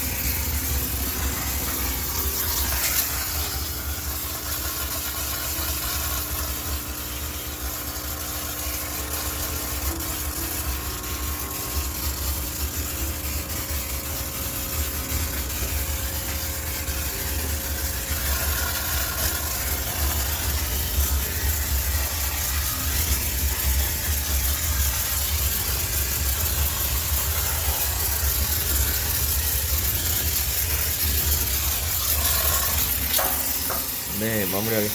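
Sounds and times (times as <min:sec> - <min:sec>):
steam cleaner running: 0:00.0 - 0:34.9.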